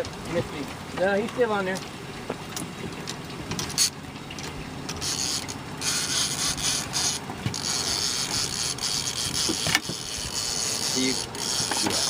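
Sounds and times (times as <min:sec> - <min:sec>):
fishing reel whirring: 0:03.6 - 0:04.0, 0:04.9 - 0:12.0.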